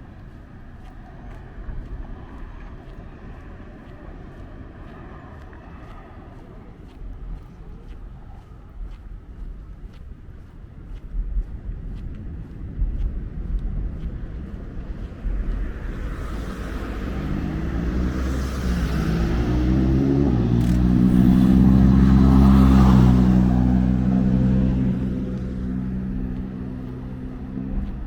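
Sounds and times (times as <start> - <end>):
wind rumble on microphone: 0.0 - 28.0
motor engine humming: 11.4 - 28.0.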